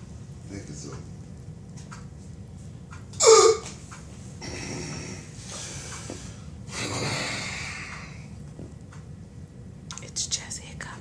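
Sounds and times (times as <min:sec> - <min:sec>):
man hiccuping: 0:03.1 - 0:03.8
heavy breathing: 0:04.4 - 0:08.3.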